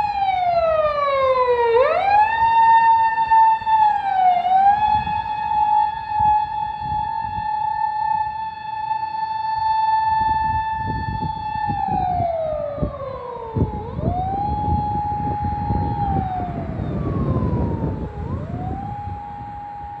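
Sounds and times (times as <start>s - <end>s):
police car electronic siren: 0.0s - 20.0s
road and engine rumble: 0.0s - 20.0s.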